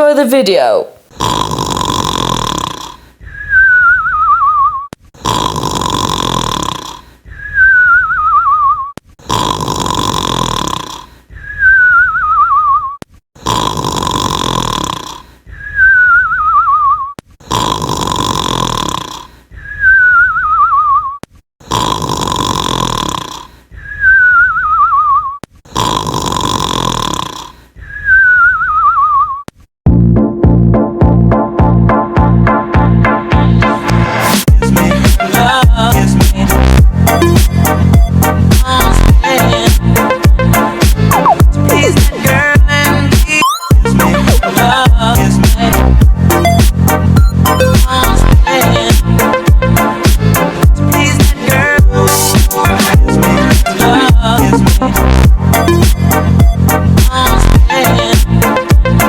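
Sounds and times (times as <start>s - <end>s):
rasping snore: 1.1s - 3.8s, 5.2s - 7.9s, 9.2s - 11.8s, 13.4s - 16.0s, 17.4s - 20.0s, 21.6s - 24.2s, 25.6s - 28.2s, 34.2s - 44.8s, 45.4s - 59.0s
cartoon snoring: 1.1s - 12.6s, 13.4s - 29.5s, 34.1s - 59.0s
falling whistle: 3.3s - 4.9s, 7.4s - 8.9s, 11.4s - 13.0s, 15.6s - 17.2s, 19.7s - 21.2s, 23.8s - 25.4s, 27.9s - 29.4s.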